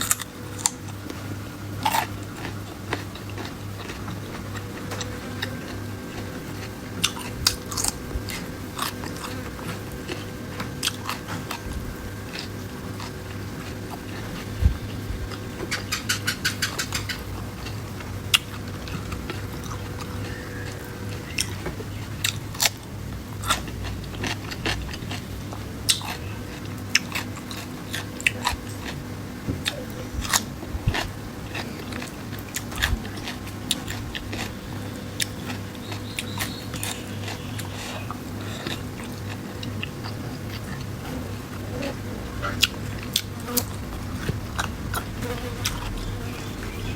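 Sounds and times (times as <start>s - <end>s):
chewing and crunching: 0.0s - 46.9s
steady low hum: 0.0s - 46.9s.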